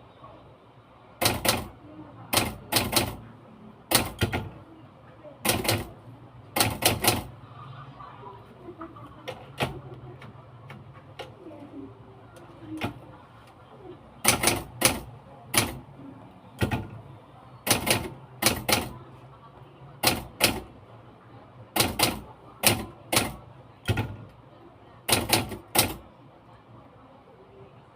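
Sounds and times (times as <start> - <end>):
typewriter keys striking: 1.2 - 3.2, 3.9 - 4.6, 5.4 - 7.3, 9.2 - 11.4, 12.8 - 13.0, 14.2 - 15.8, 16.6 - 17.0, 17.6 - 19.0, 20.0 - 20.7, 21.8 - 24.4, 25.1 - 26.0.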